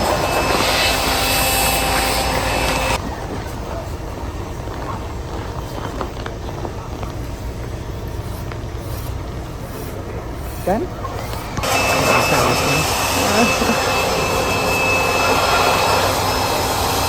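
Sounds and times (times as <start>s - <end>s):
mechanical running noise: 0.0s - 17.0s
outdoor background noise: 0.0s - 17.0s
steady tones: 7.2s - 17.0s.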